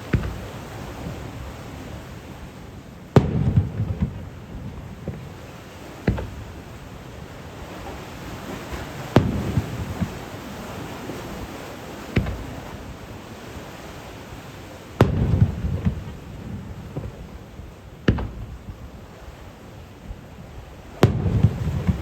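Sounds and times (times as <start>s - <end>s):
fireworks booming: 0.0s - 1.6s, 3.1s - 6.7s, 8.7s - 11.5s, 12.1s - 13.0s, 15.0s - 18.8s, 20.9s - 22.0s
crackling fireworks bursts: 3.1s - 11.5s, 15.0s - 19.4s, 20.8s - 22.0s.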